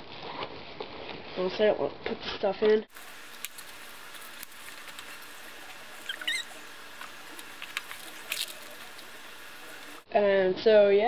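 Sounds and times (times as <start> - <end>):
steady hiss: 2.9 - 10.1
high squeak: 6.0 - 6.6.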